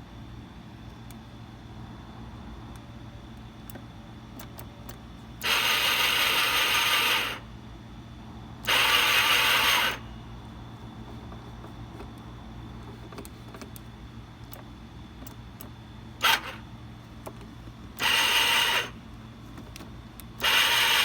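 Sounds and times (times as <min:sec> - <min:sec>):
scooter starter cranking engine: 0:05.4 - 0:07.4, 0:08.7 - 0:10.0, 0:16.2 - 0:16.7, 0:18.0 - 0:19.0, 0:20.4 - 0:21.0.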